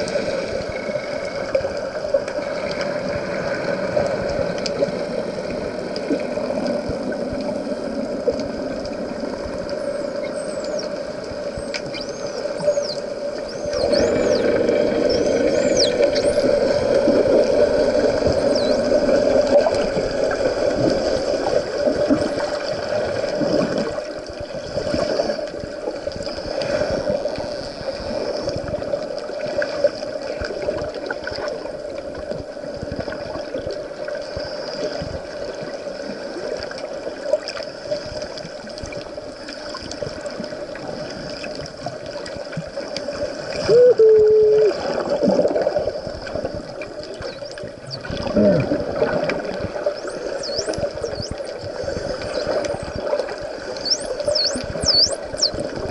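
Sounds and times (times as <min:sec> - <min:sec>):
underwater low hum: 0:00.0 - 0:55.9
dolphin whistles: 0:11.6 - 0:16.4, 0:18.4 - 0:18.9, 0:43.7 - 0:44.8, 0:50.0 - 0:51.4, 0:53.8 - 0:55.6.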